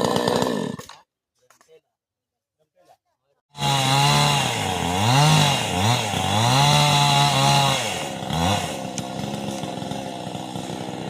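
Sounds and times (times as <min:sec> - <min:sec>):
chainsaw engine revving: 0:00.0 - 0:01.0, 0:03.5 - 0:11.0.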